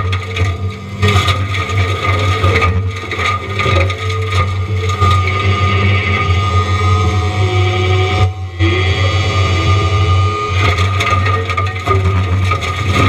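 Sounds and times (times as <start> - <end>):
wood cracking and crunching: 0.0 - 7.2, 10.4 - 13.0
mulching machine drone: 0.0 - 13.0.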